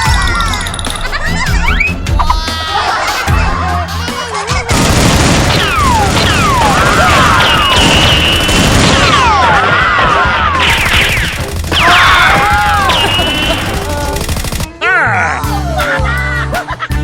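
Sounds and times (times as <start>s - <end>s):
background music: 0.0s - 17.0s
gunfire and explosions: 4.7s - 14.7s
falling whistles: 12.8s - 13.6s.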